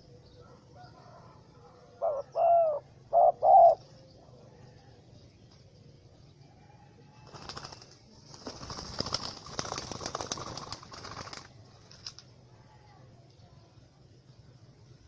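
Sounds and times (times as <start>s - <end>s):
dove wings flapping: 7.2s - 12.3s.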